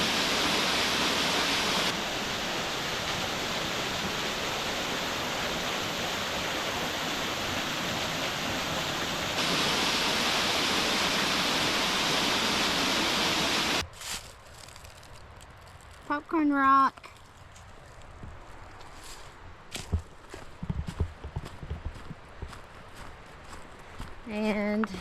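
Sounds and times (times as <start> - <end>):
waterfall roaring: 0.0 - 13.8.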